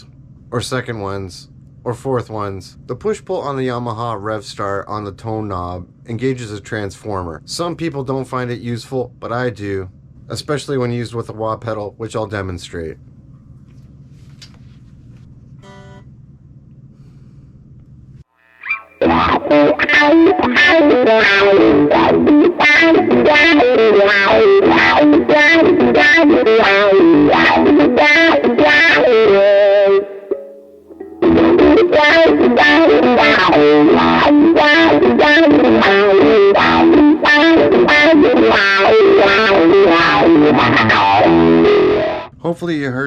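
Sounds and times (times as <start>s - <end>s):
distorted electric guitar riff: 18.3s - 42.3s.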